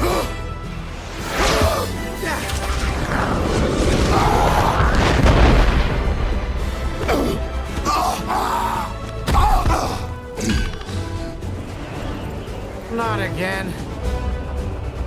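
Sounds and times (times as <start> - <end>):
orchestral action music: 0.0 - 15.0
heavy booms: 2.4 - 8.0.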